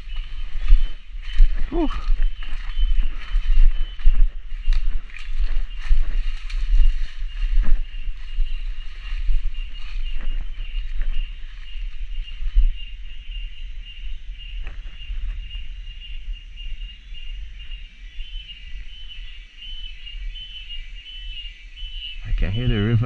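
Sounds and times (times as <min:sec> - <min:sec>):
low microphone rumble: 0:00.0 - 0:17.8
cicadas chorus: 0:00.0 - 0:23.0.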